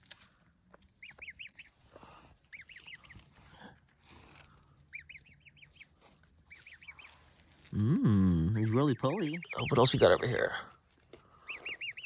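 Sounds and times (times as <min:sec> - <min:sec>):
gosling peeping: 0:00.9 - 0:03.8, 0:04.5 - 0:12.0.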